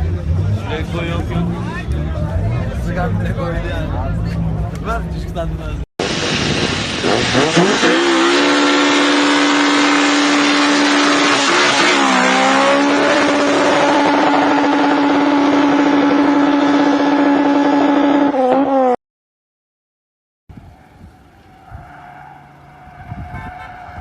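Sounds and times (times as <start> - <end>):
car engine revving hard: 6.4 - 18.9.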